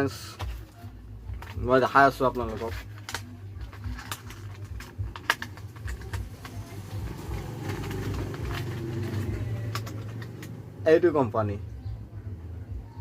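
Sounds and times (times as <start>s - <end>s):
sharp clicks and taps: 2.5s - 10.7s.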